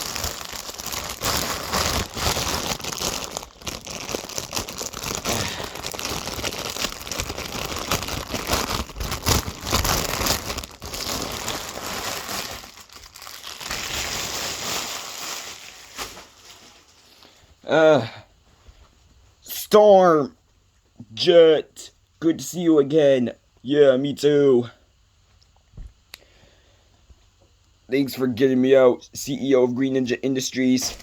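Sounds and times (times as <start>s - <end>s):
packaging crinkling and rustling: 0.0s - 17.4s.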